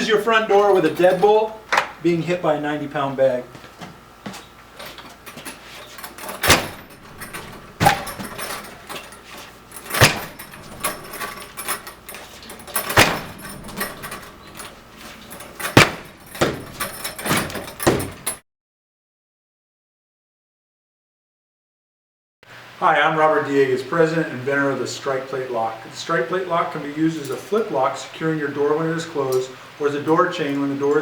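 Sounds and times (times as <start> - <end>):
door and hardware clattering: 4.8 - 18.4
heavy bag banging against door: 5.3 - 18.4.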